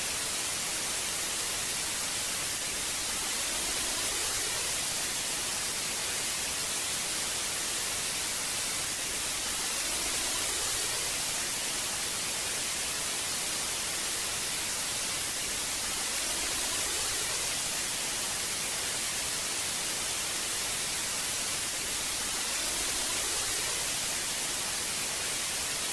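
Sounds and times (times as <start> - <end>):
television static hiss: 0.0 - 25.9.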